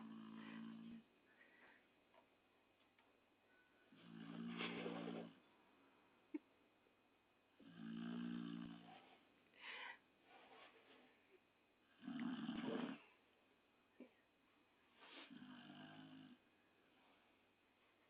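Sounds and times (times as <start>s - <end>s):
dog snoring: 0.0s - 1.1s, 3.9s - 5.4s, 7.6s - 9.2s, 11.8s - 13.2s, 15.1s - 16.4s.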